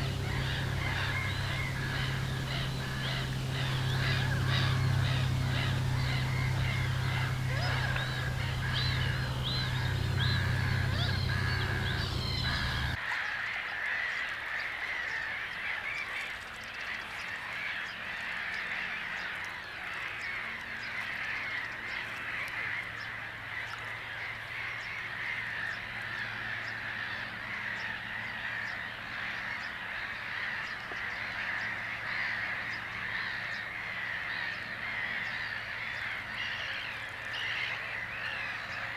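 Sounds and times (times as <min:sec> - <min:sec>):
birds calling: 0:00.0 - 0:13.0
steady low hum: 0:00.0 - 0:13.0.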